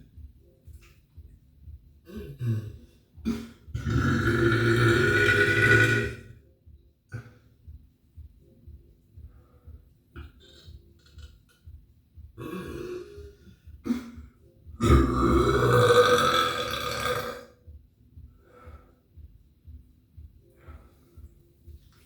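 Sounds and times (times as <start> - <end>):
person burping: 2.1 - 6.3, 12.4 - 13.2, 14.8 - 17.5.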